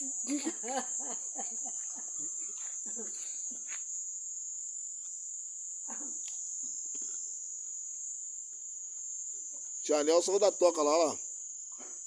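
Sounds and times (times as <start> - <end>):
crickets chirring: 0.0 - 12.0.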